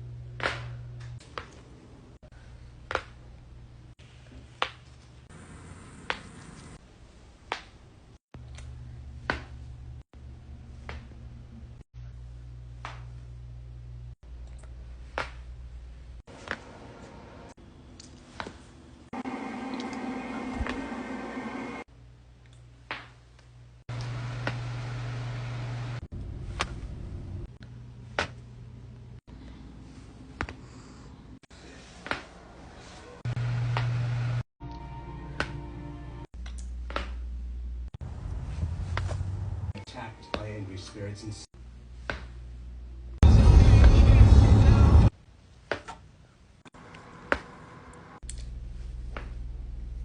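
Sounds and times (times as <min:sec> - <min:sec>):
low steady hum: 0:46.1 - 0:50.0.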